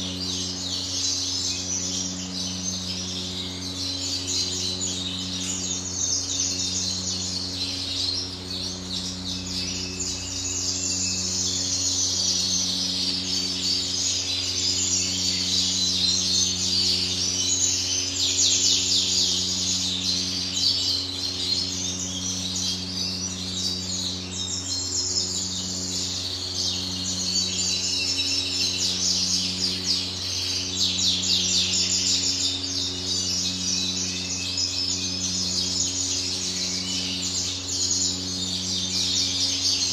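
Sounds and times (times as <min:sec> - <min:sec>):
low electrical hum: 0:00.0 - 0:39.9.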